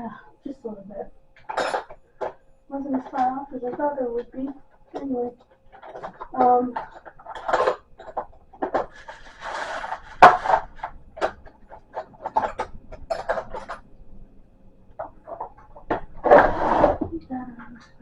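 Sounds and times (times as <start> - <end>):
hand tools clicking and knocking: 1.4 - 13.8.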